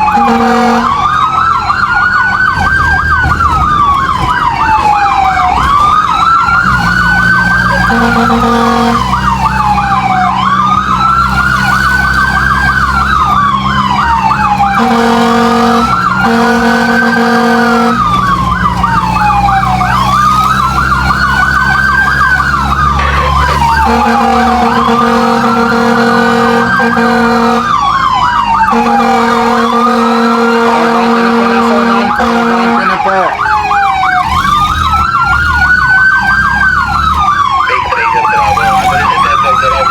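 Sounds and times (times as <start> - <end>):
horn blasts: 0.0 - 1.1, 7.6 - 9.4, 14.7 - 18.3, 23.0 - 27.8, 28.6 - 33.3
engine rumble: 0.0 - 39.9
fire truck siren wailing: 0.0 - 39.9.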